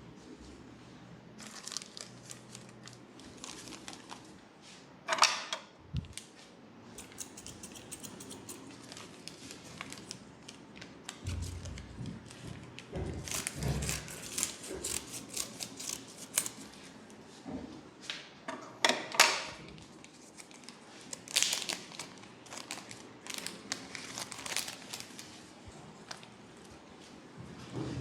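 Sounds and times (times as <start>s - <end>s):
fingers rubbing through hair: 7.0s - 8.8s.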